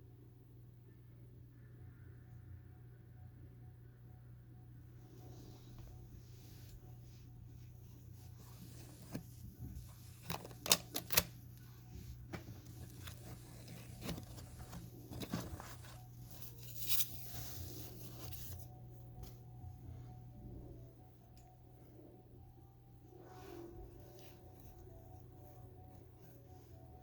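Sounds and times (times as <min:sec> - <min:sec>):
steady low hum: 0:00.0 - 0:27.0
packaging rustling: 0:08.6 - 0:17.3.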